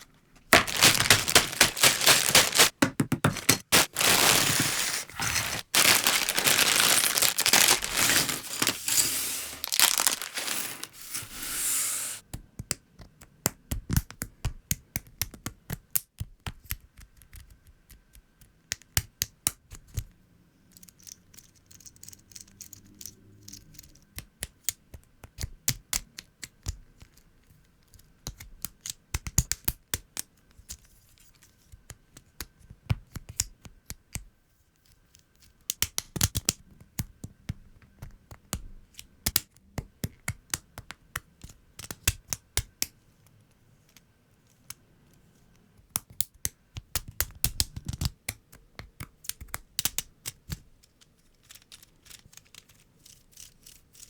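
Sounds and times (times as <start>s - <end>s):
plastic pieces clicking together: 0.6s - 9.0s.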